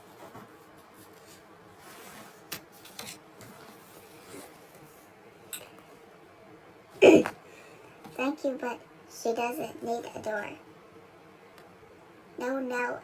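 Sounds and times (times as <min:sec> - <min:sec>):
faint handling rustle: 0:00.0 - 0:06.1.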